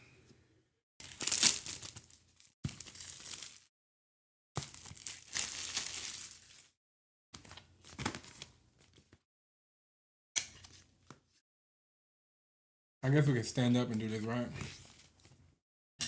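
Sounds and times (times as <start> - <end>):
packaging crinkling and tearing: 1.0 - 3.7, 4.6 - 6.7.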